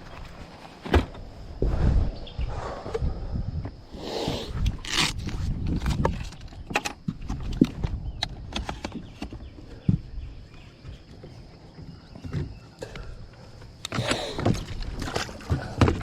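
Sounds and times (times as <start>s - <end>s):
low rumble: 1.4s - 3.8s
irregular knocks and clunks: 5.9s - 16.0s.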